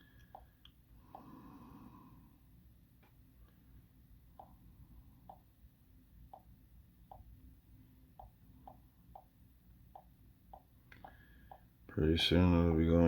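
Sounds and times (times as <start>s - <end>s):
faint low hum: 0.0s - 13.0s.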